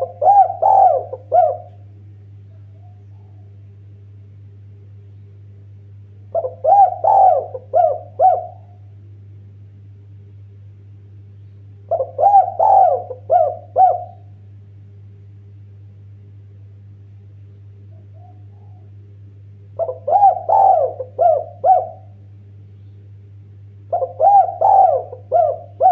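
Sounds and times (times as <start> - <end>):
dove cooing: 0.0 - 1.8, 6.3 - 8.8, 11.9 - 14.3, 17.9 - 19.0, 19.8 - 22.2, 23.9 - 25.9
steady low hum: 0.0 - 25.9.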